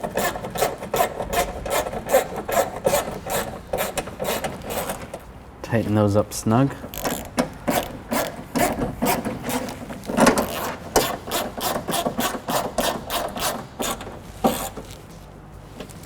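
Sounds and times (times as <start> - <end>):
ratcheting tool clicking: 6.9 - 14.8.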